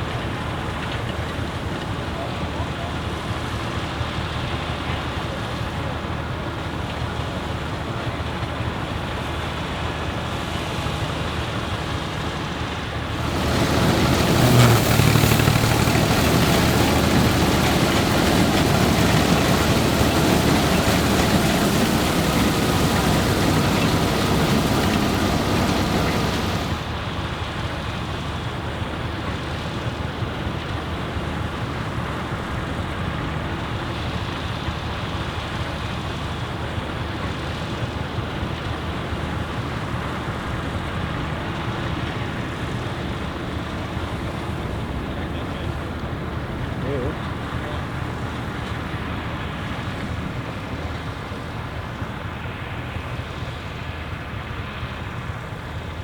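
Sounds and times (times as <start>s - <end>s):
diesel tractor engine running: 12.9s - 27.5s
combine threshing: 13.2s - 26.9s.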